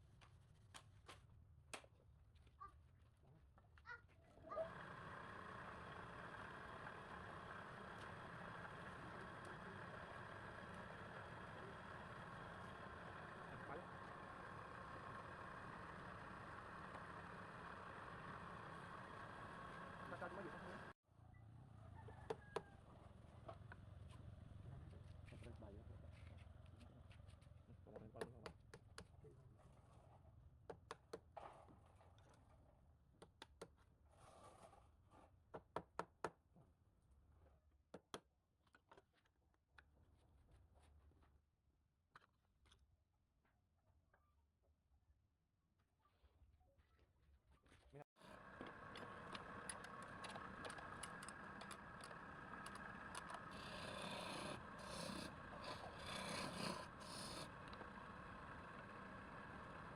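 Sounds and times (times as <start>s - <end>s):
wood lathe humming: 4.7s - 20.9s, 48.2s - 59.9s
turning tool scraping wood: 48.6s - 59.0s.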